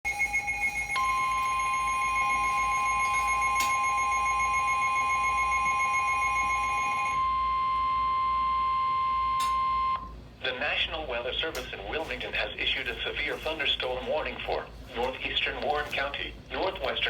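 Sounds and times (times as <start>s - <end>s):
pulsing alarm tone: 0.1s - 10.1s
steady single alarm tone: 0.1s - 10.1s.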